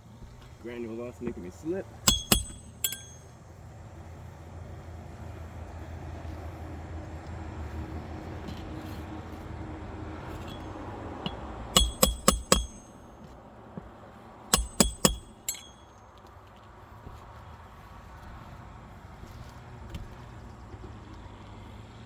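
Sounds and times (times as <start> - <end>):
hammer driving nails into shingles: 2.0 - 3.3, 10.4 - 13.4, 14.5 - 16.0.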